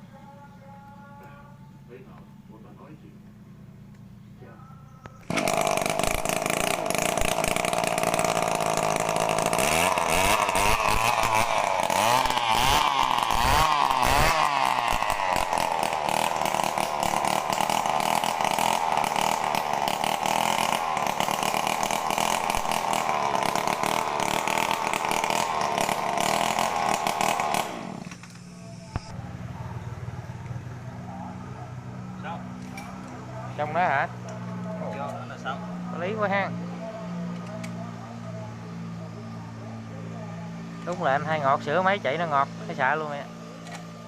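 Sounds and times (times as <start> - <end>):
brush cutter engine revving: 5.2 - 29.1.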